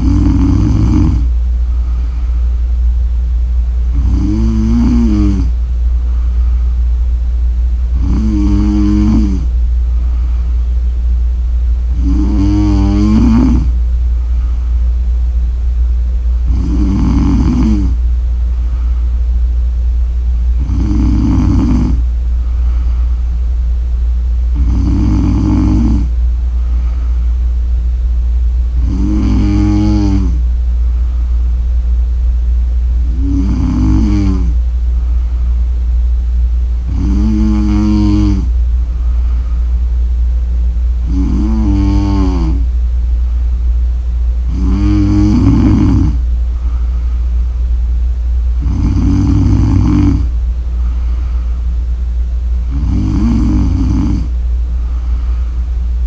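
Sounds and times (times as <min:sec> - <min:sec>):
woman snoring: 0:00.0 - 0:02.0, 0:03.9 - 0:05.6, 0:07.9 - 0:09.6, 0:11.9 - 0:13.8, 0:16.4 - 0:18.0, 0:20.6 - 0:22.1, 0:24.5 - 0:26.2, 0:28.8 - 0:30.4, 0:33.0 - 0:34.6, 0:36.8 - 0:38.6, 0:41.0 - 0:42.7, 0:44.5 - 0:46.8, 0:48.6 - 0:51.0, 0:52.6 - 0:55.2
steady low hum: 0:00.0 - 0:56.0.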